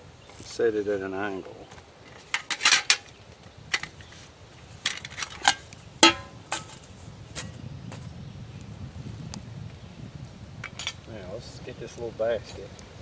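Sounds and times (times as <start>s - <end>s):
metal cookware clanking: 2.3s - 3.1s, 4.9s - 6.8s.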